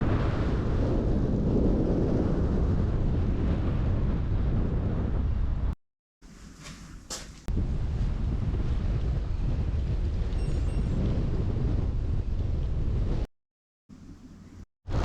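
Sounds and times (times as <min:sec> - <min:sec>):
wind buffeting microphone: 0:00.0 - 0:05.8, 0:07.4 - 0:13.3.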